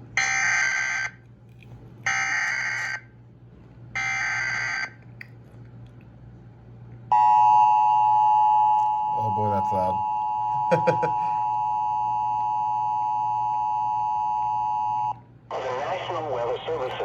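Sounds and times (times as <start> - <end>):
loud steady attention tone: 7.1 - 15.2.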